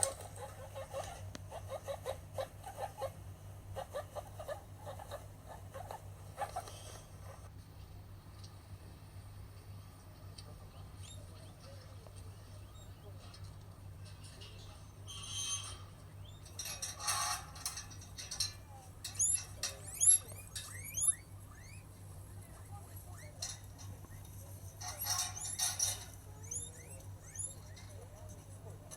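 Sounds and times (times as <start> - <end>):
guinea pig squeaky calls: 0.0 - 3.2, 3.8 - 7.0, 11.0 - 11.6, 19.0 - 22.0, 24.8 - 28.2.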